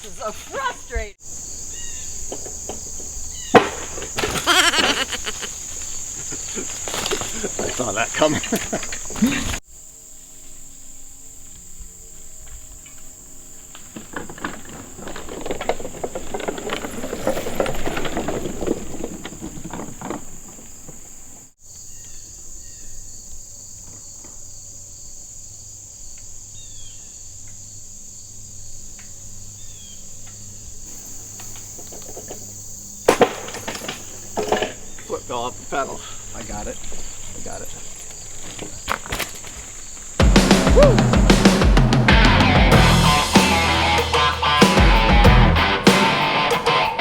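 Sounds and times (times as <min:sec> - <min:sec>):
crickets and insects trilling: 0:00.0 - 0:47.0
bike tyres clattering over wooden planks: 0:00.1 - 0:09.6, 0:12.4 - 0:21.6, 0:30.9 - 0:43.0.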